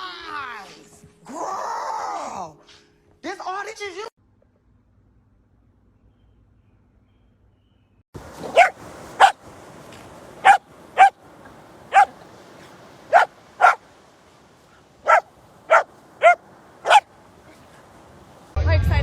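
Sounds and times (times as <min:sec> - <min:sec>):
dog barking: 0:08.4 - 0:09.4, 0:10.4 - 0:11.2, 0:11.9 - 0:12.2, 0:13.1 - 0:13.8, 0:15.0 - 0:17.1.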